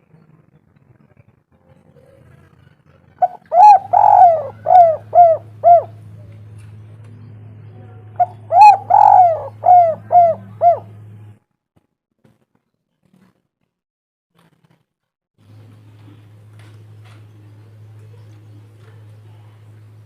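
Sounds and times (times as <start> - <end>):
steady low hum: 3.0 - 11.4, 15.4 - 20.0
dove cooing: 3.2 - 6.7, 8.1 - 11.1.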